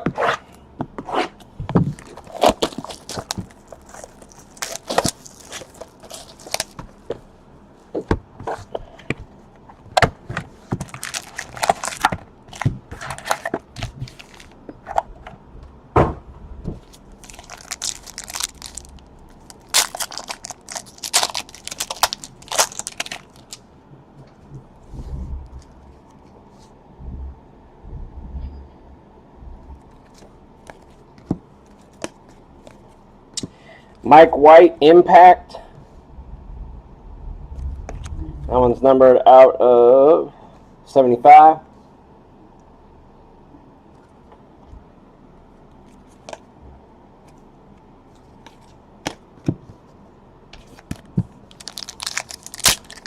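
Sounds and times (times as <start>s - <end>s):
wrappers tearing and crinkling: 1.9s - 6.8s, 10.8s - 14.6s, 17.0s - 23.6s, 51.5s - 53.0s
cards being handled: 1.9s - 7.2s, 10.3s - 15.0s, 16.8s - 23.6s.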